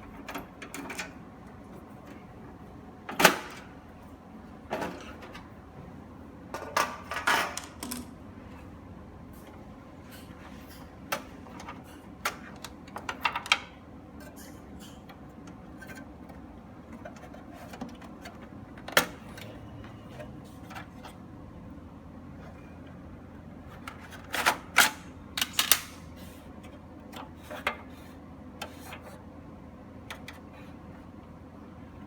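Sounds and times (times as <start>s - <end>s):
pc tower being handled: 6.8s - 8.2s.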